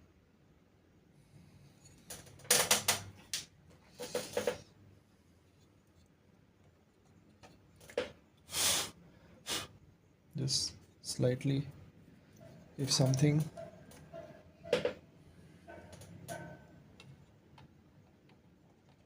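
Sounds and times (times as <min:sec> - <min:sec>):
computer parts clicking and tapping: 0:02.0 - 0:04.7, 0:15.7 - 0:19.0
rubbing of parts: 0:03.8 - 0:04.7.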